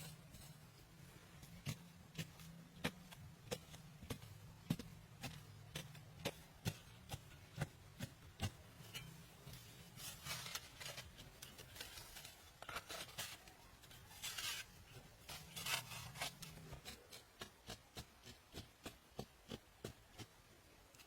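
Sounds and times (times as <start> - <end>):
scraping rustling strokes: 8.8 - 17.1.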